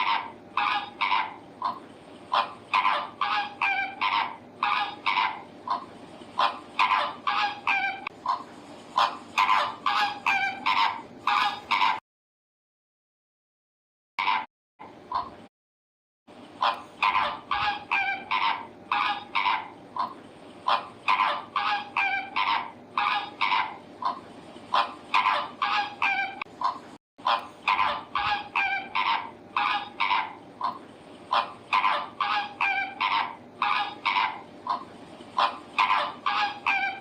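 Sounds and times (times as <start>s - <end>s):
fowl squawking: 0.0s - 12.0s, 14.2s - 14.5s, 15.1s - 15.4s, 16.6s - 37.0s
low background noise: 0.0s - 12.0s, 16.3s - 37.0s.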